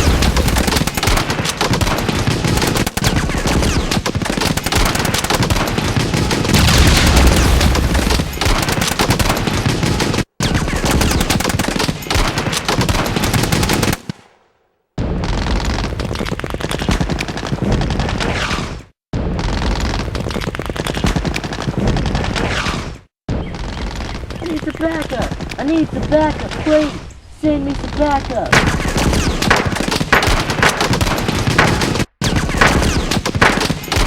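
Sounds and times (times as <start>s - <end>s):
automatic gunfire: 0.0s - 10.2s, 28.5s - 34.0s.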